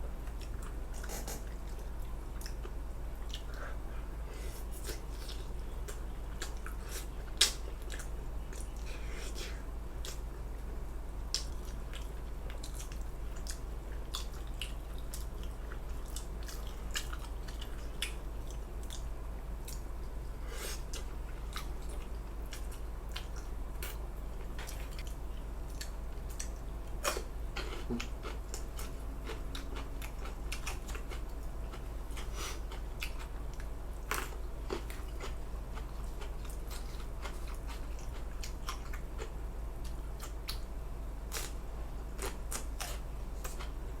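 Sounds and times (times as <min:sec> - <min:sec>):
steady low hum: 0:00.0 - 0:44.0
person chewing and biting: 0:24.6 - 0:40.6, 0:41.3 - 0:43.8.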